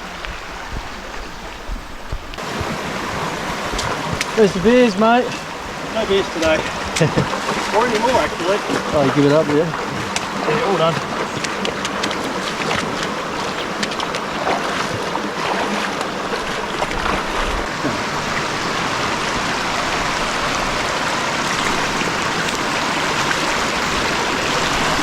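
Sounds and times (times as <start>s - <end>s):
people splashing through water: 0.0s - 25.0s
river water rushing: 0.0s - 25.0s.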